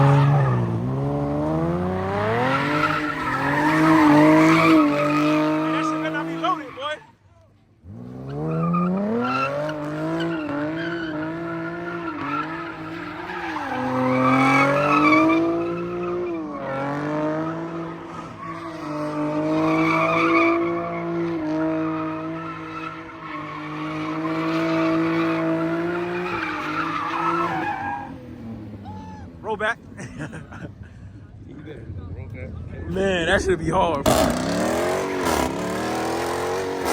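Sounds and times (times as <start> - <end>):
car engine revving high: 0.0 - 6.7, 34.0 - 36.9
tyres squealing: 2.0 - 7.1, 21.8 - 28.2.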